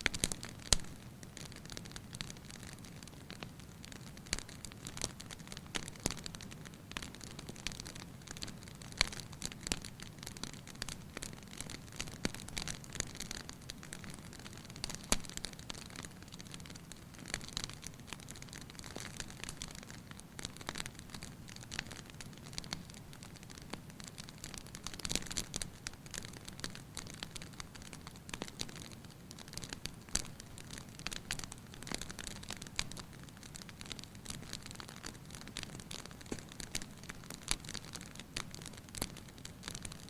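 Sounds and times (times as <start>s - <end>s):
fireplace fire crackling: 0.0s - 40.0s.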